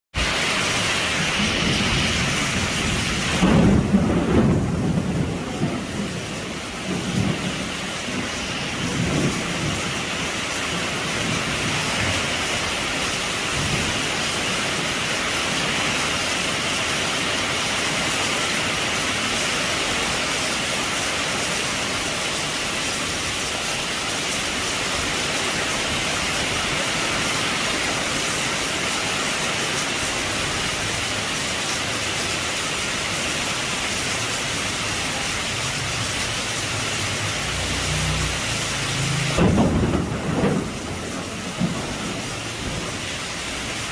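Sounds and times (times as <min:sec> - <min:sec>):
heavy rain on a roof: 0:00.1 - 0:43.9
low rumble of thunder: 0:01.2 - 0:10.2, 0:39.0 - 0:43.7.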